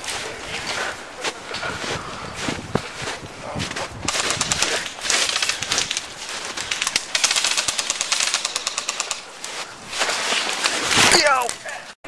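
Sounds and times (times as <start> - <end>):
airsoft gun firing full auto: 6.8 - 9.2.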